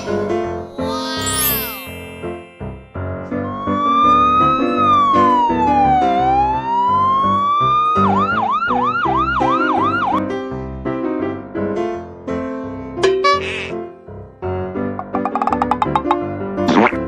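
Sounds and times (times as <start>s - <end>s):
emergency siren wailing: 3.4s - 10.2s.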